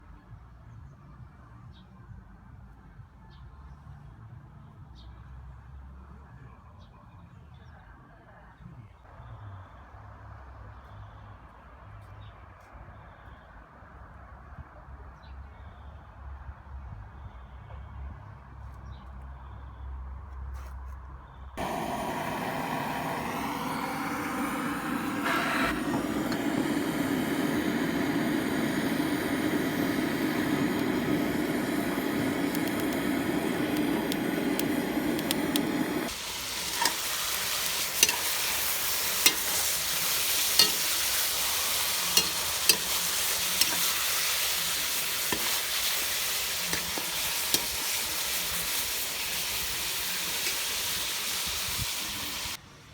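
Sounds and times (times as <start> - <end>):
meat sizzling in hot fat: 21.6 - 52.6.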